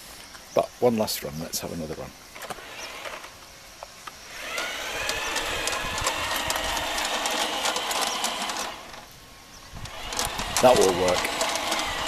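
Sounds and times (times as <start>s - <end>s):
model train motor whining: 2.4s - 3.4s, 4.3s - 9.1s, 9.8s - 12.0s
wheels clicking over rail joints: 4.4s - 9.1s, 9.8s - 12.0s.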